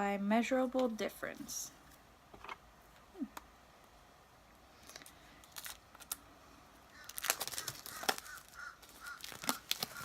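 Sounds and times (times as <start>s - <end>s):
packaging rustling: 4.8s - 6.2s, 6.9s - 10.0s.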